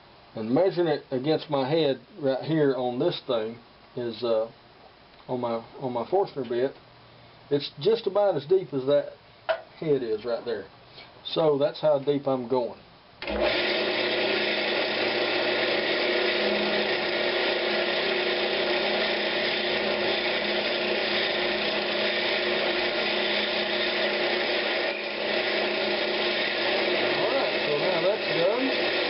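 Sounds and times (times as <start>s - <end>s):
wood lathe boring whine: 13.2s - 29.0s.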